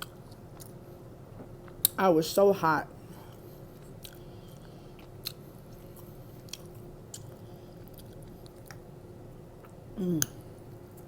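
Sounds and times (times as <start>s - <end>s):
person chewing food: 0.0s - 0.8s, 3.2s - 11.0s
air conditioner hum: 0.0s - 11.0s.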